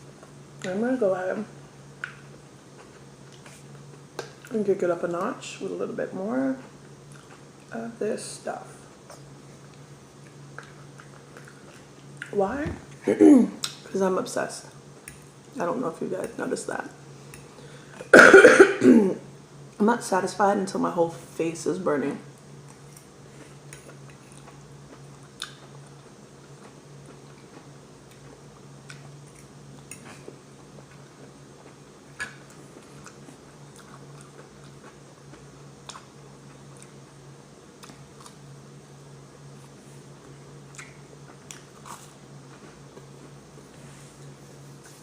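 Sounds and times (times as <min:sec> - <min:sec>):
low background hum: 0:00.0 - 0:45.0
person chewing food: 0:06.7 - 0:07.7, 0:09.1 - 0:12.3, 0:22.6 - 0:37.1, 0:37.8 - 0:38.4, 0:39.7 - 0:43.5
soft mouth clicks and smacks: 0:25.2 - 0:26.0, 0:35.8 - 0:36.1, 0:37.8 - 0:38.4, 0:40.7 - 0:41.8.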